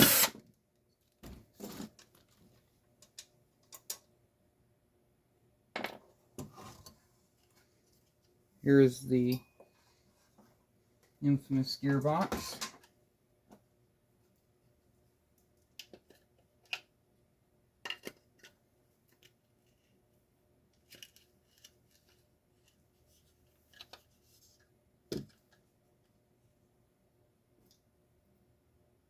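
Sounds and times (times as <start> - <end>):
light clicks and rattles of parts: 1.0 - 4.1.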